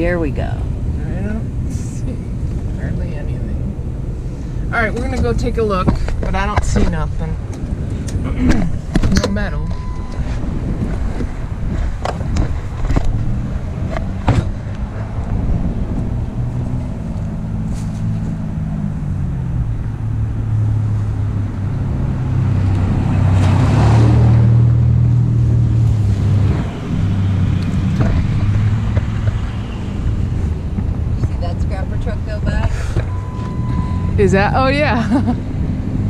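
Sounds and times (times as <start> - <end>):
vehicle passing: 0.0 - 36.0
vehicle engine running: 24.4 - 36.0.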